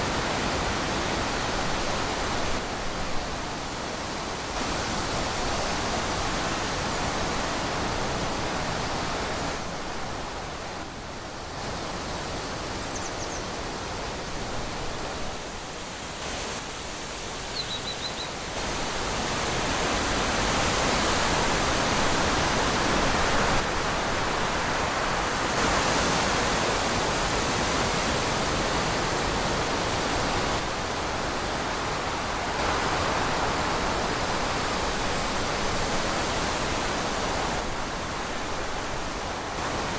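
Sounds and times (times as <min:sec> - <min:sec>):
wind blowing through trees: 0:00.0 - 0:39.9
faint high chirps: 0:17.5 - 0:18.4.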